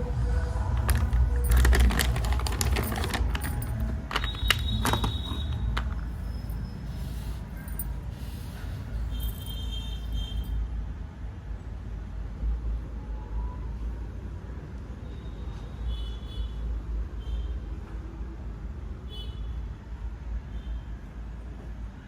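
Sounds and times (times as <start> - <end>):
steady low rumble: 0.0 - 4.1
objects being handled clicking: 0.7 - 6.6.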